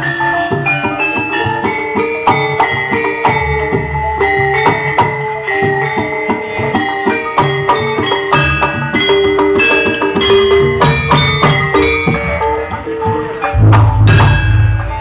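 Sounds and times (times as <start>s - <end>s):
metallophones ringing: 0.0s - 12.8s, 13.4s - 15.0s
drum strokes: 13.5s - 15.0s.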